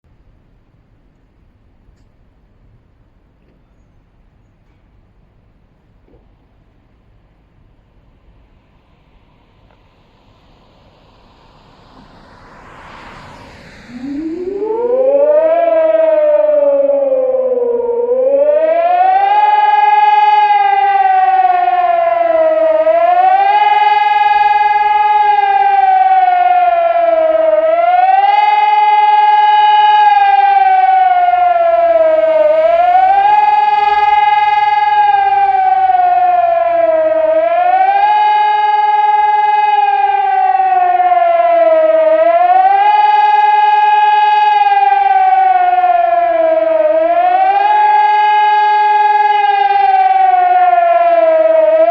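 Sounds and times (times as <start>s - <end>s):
electronic siren wailing: 8.2s - 51.9s.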